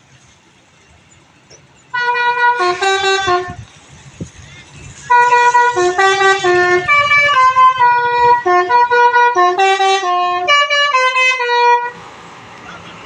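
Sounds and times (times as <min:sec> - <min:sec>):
multi-tone bus horn tune: 0:01.9 - 0:03.7, 0:05.0 - 0:12.0.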